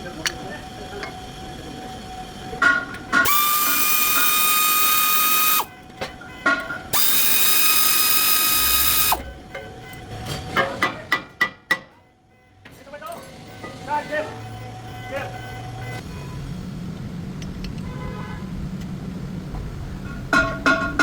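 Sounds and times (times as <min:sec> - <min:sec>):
air tool whining: 0:03.1 - 0:05.7, 0:06.9 - 0:09.3.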